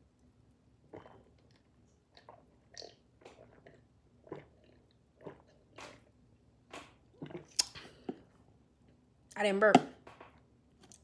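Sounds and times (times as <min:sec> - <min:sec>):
person swallowing: 0:07.2 - 0:08.2.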